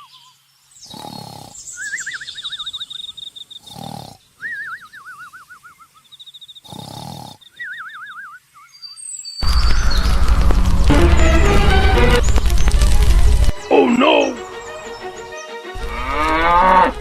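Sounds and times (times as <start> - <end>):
warbling whistled calls: 0.8 - 3.7, 4.4 - 6.6, 7.4 - 10.3, 13.5 - 15.7
deep animal roars: 15.8 - 17.0.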